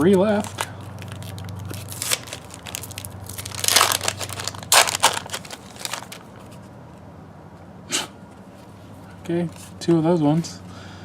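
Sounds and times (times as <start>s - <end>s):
wrapper tearing and crinkling: 0.0s - 6.6s.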